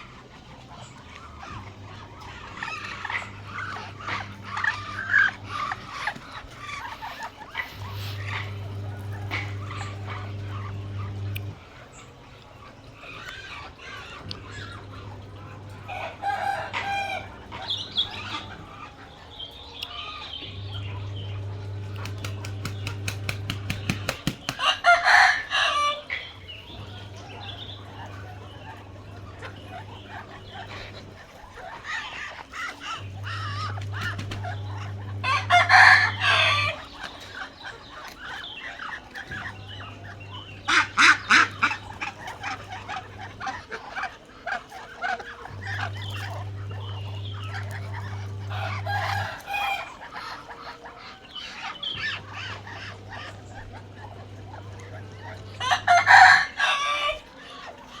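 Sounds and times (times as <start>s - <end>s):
chickens clucking: 0.0s - 58.0s
low steady hum: 0.0s - 58.0s
rooster crowing: 15.1s - 18.6s, 22.4s - 26.2s, 34.6s - 37.0s, 47.6s - 50.0s, 55.5s - 57.4s.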